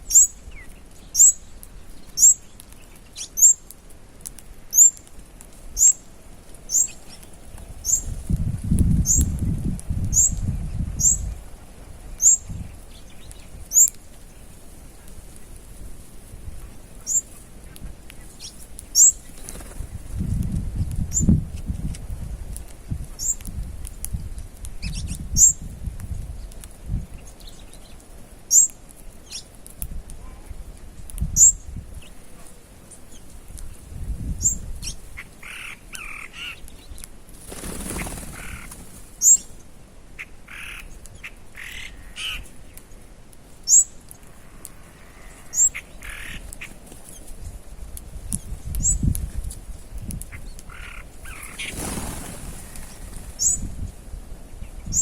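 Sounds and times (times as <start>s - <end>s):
lower bird calls: 11.0s - 11.4s, 40.2s - 42.8s, 43.7s - 47.3s, 50.3s - 53.7s.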